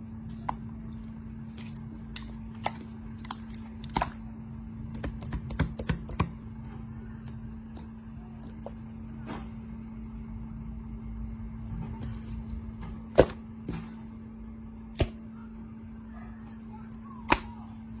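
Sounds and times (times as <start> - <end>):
steady low hum: 0.0 - 18.0
slime being squished: 1.5 - 4.2.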